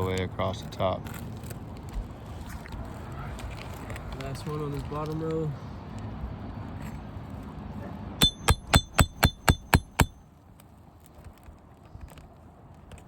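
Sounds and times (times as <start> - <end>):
hammer tapping metal: 8.2 - 10.2.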